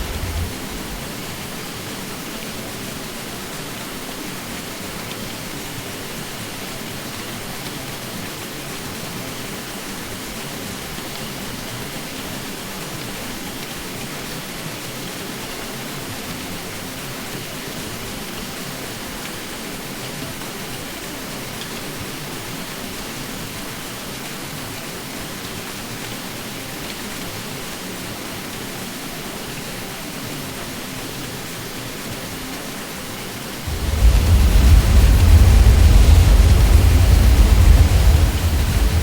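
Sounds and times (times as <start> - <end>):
ceiling fan running: 33.6 - 39.0.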